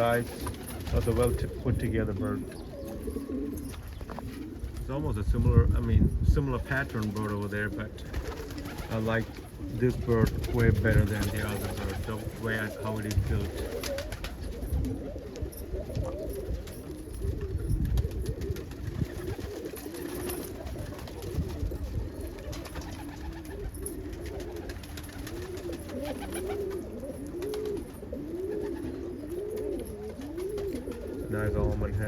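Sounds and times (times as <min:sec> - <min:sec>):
pigeons cooing: 0:00.0 - 0:32.0.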